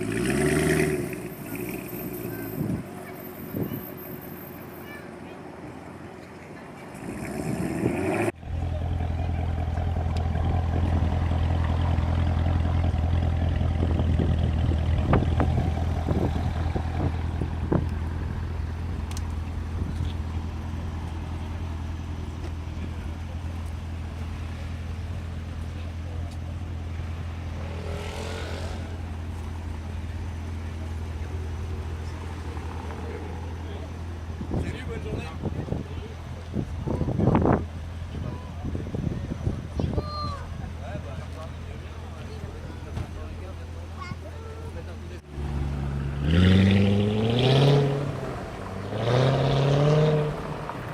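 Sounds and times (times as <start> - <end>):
vehicle passing: 6.7 - 36.7, 44.7 - 50.9
engine idling: 8.4 - 27.3.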